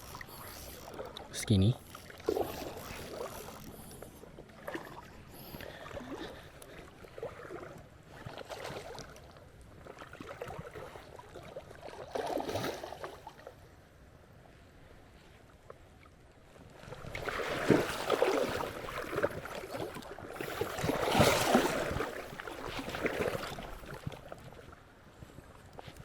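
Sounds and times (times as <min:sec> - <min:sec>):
water splashing in a creek: 0:00.0 - 0:13.6, 0:16.8 - 0:25.0.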